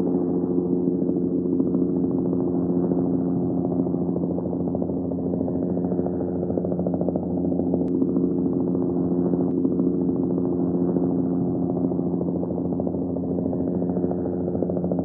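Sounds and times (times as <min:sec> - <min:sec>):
helicopter engine drone: 0:00.0 - 0:15.0
helicopter rotor chop: 0:00.0 - 0:15.0.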